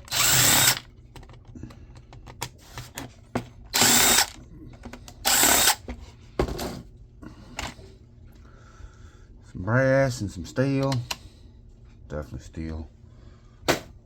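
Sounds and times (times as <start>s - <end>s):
electric drill-driver whirring: 0.0s - 0.9s, 3.7s - 4.4s, 5.2s - 5.8s.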